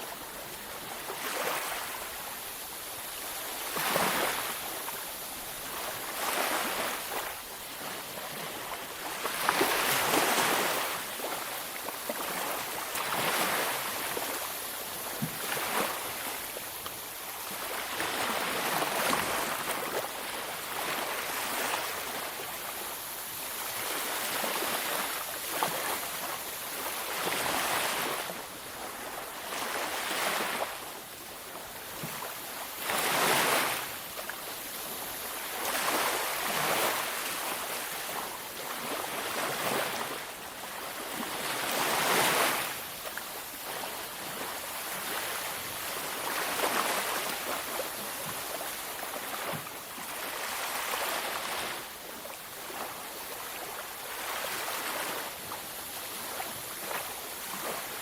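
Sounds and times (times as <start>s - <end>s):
hiss of surf: 0.0s - 58.0s
ocean waves breaking: 5.7s - 14.4s, 48.6s - 51.8s.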